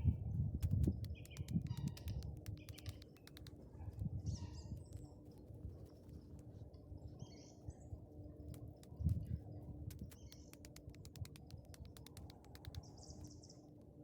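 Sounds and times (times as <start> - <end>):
sharp crackles: 0.6 - 3.6, 8.5 - 12.9
birds chirping: 0.6 - 13.7.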